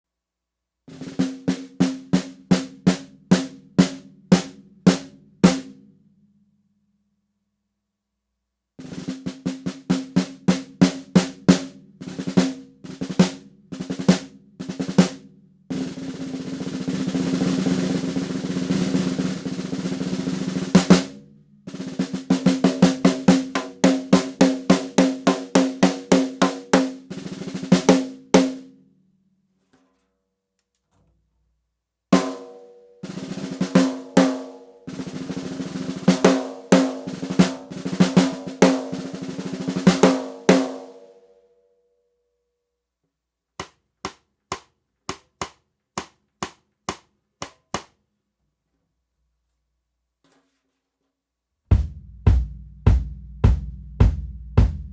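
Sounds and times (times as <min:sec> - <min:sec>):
snare drum roll: 0:08.8 - 0:28.7, 0:32.2 - 0:41.0, 0:51.7 - 0:54.9
drum kit hits: 0:51.7 - 0:54.9.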